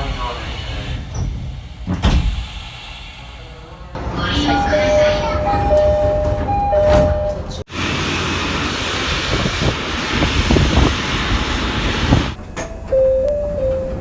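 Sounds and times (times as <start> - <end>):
loud rushing machine rumble: 7.7 - 12.6.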